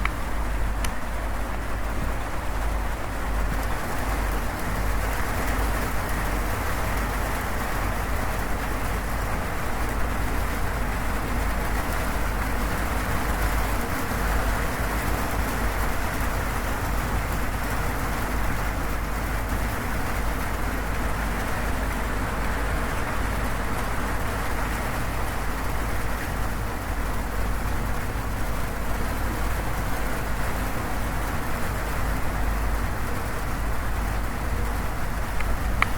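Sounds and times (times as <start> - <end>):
heavy rain on a metal roof: 0.0 - 35.9.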